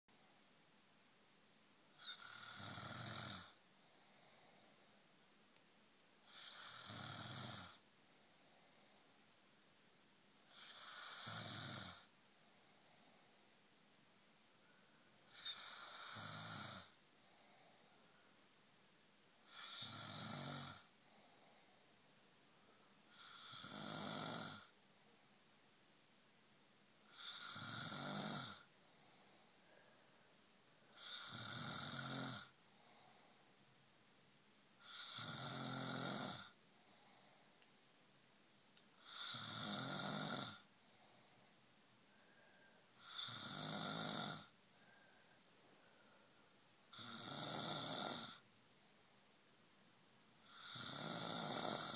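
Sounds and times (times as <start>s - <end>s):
man snoring: 2.0s - 3.6s, 6.2s - 7.8s, 10.5s - 12.1s, 15.3s - 17.0s, 19.4s - 20.9s, 23.1s - 24.8s, 27.1s - 28.7s, 30.9s - 32.6s, 34.8s - 36.6s, 39.0s - 40.7s, 42.9s - 45.0s, 46.9s - 48.4s, 50.4s - 51.9s.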